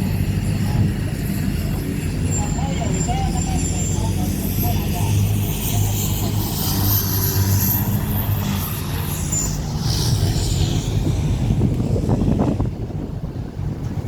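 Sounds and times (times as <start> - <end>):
boat engine humming: 0.0 - 14.0
water noise: 0.0 - 14.0
wind noise: 4.8 - 14.0.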